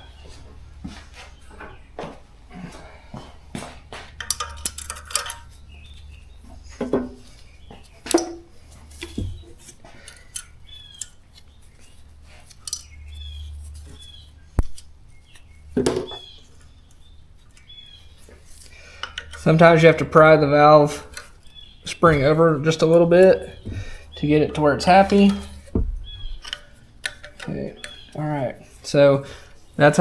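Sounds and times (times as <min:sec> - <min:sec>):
metal parts clinking: 0:04.2 - 0:05.8, 0:12.4 - 0:13.0, 0:18.5 - 0:28.2.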